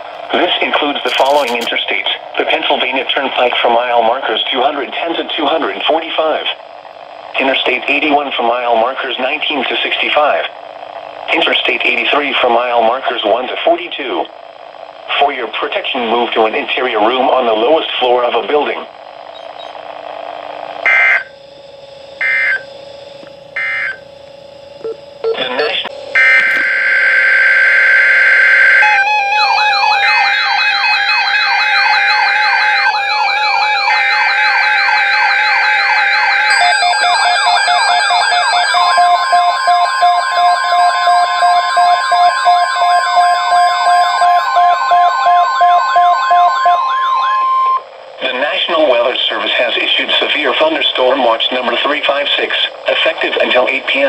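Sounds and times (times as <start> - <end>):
radio hiss: 0.0 - 21.3, 48.1 - 54.0
buzzy digital data tones: 19.1 - 48.9
siren-like whoops and beeps: 22.2 - 22.6, 23.6 - 24.0, 25.3 - 47.8.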